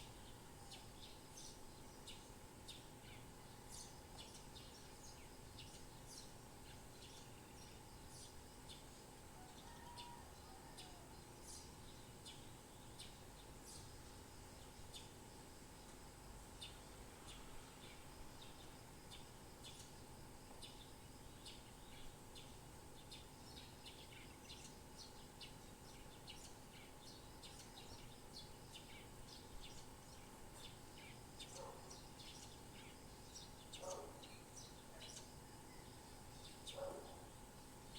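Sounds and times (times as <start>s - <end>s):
faint steady hum: 0.0s - 37.9s
birds chirping: 16.6s - 37.5s.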